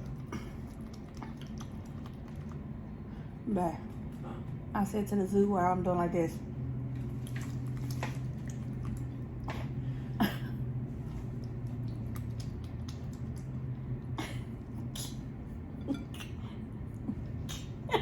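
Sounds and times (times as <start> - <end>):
chewing smacks and clicks: 0.0 - 2.9, 7.0 - 9.8, 11.1 - 14.1, 16.0 - 16.4
low steady hum: 0.0 - 18.0.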